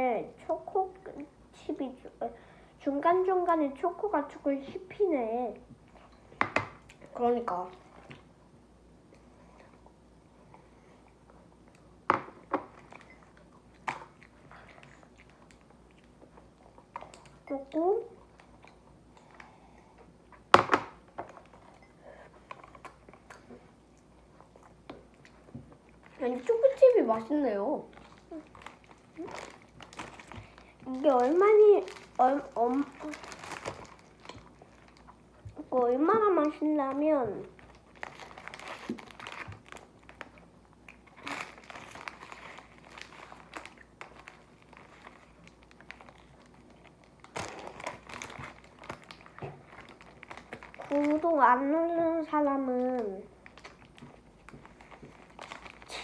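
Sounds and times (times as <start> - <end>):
chewing bread: 12.8 - 17.5, 27.9 - 35.6, 37.5 - 51.3
plastic wrapper crinkling: 25.1 - 56.0.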